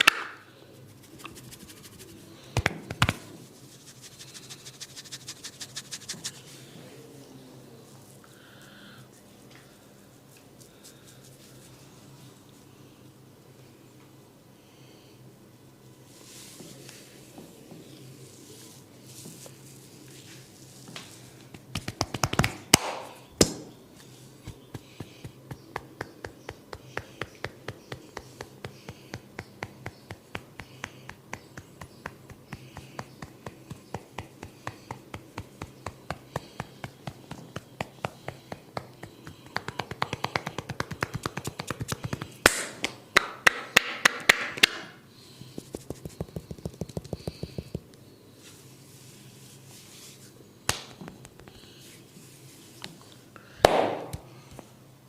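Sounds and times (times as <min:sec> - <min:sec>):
hands tapping a head: 0:02.6 - 0:03.3, 0:21.5 - 0:23.8, 0:24.4 - 0:48.0, 0:50.7 - 0:51.6, 0:53.6 - 0:54.3.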